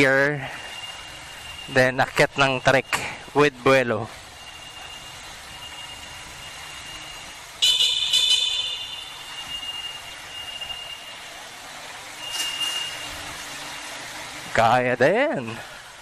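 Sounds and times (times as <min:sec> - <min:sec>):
motorcycle engine climbing: 0:00.0 - 0:16.0
sharp high-pitched squeal: 0:00.4 - 0:03.7, 0:04.3 - 0:11.3, 0:12.2 - 0:13.8.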